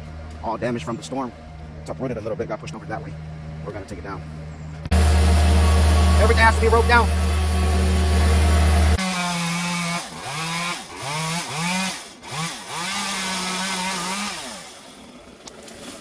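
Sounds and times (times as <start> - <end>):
loud low engine hum: 0.0 - 9.1
chainsaw revving: 4.9 - 15.0.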